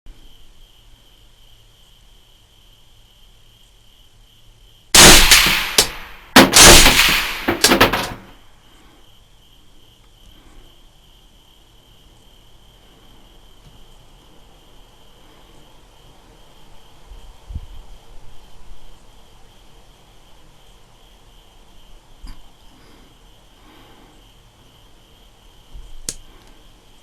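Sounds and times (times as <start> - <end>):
faint insects chirping: 0.1 - 27.0
rifle shots: 5.0 - 8.3.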